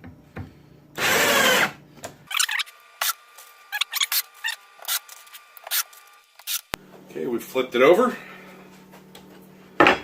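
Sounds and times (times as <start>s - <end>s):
cordless drill driving screw: 1.0s - 1.7s.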